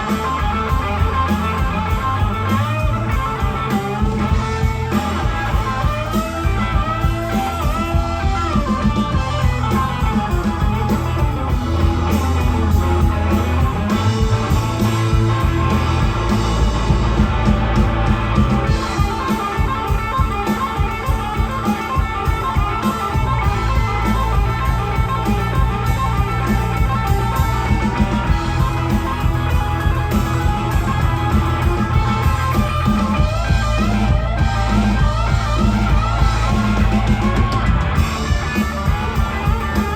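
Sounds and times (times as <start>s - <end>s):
guitar lead with bent notes: 0.0s - 39.9s
instrumental rock music: 0.0s - 39.9s.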